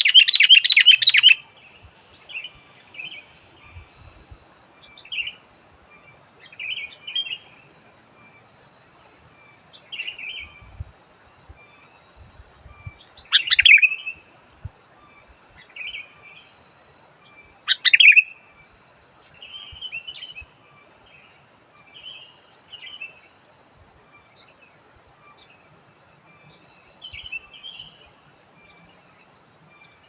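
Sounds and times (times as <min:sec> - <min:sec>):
bulbul singing: 0:00.0 - 0:01.6, 0:12.7 - 0:14.3, 0:17.3 - 0:18.4.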